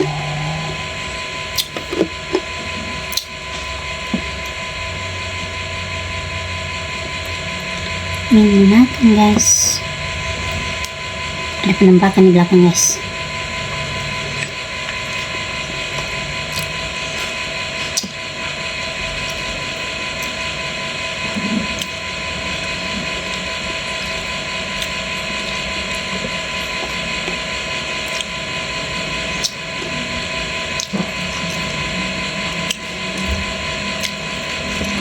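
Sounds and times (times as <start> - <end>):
small motor humming: 0.0 - 2.0.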